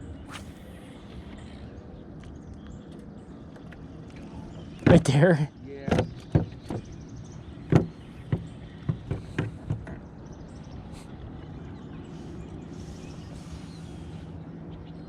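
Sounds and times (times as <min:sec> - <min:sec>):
low hum: 0:00.0 - 0:05.6
sharp knocks and clicks: 0:05.9 - 0:07.0, 0:07.7 - 0:10.0.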